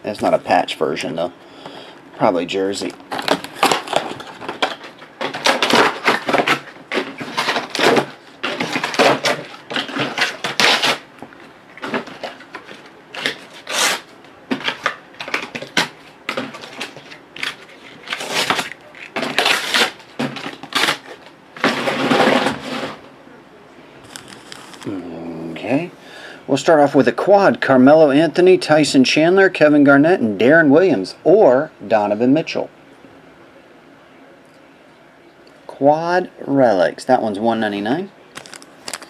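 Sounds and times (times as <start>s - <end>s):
trading card packaging rustling: 2.8s - 23.0s, 24.0s - 25.0s, 38.4s - 39.0s.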